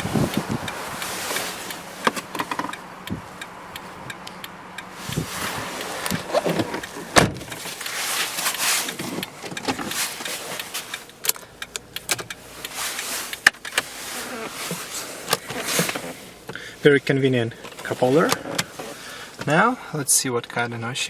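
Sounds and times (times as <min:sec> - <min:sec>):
car trim clicks and knocks: 0:00.0 - 0:13.9, 0:14.7 - 0:16.6
sharp clicks: 0:08.9 - 0:13.9.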